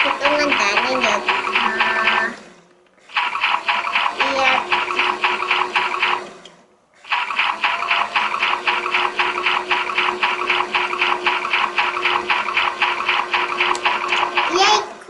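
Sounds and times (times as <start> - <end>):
rhythmic water churning: 0.0 - 2.4, 3.1 - 6.4, 7.0 - 14.7
toy washing machine humming: 0.0 - 15.0.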